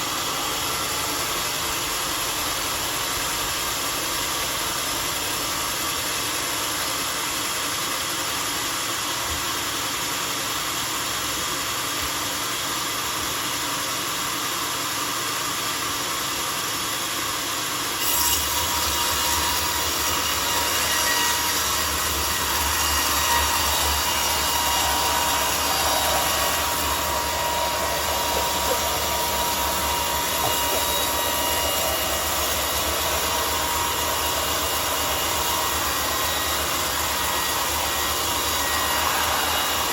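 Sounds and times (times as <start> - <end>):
sawmill mechanical whir: 0.0 - 39.9
steady high tone: 22.6 - 39.9.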